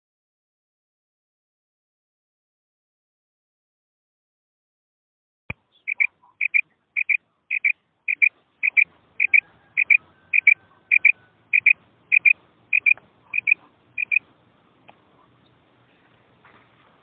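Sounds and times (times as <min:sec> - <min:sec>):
quail two-note call: 0:05.9 - 0:14.2.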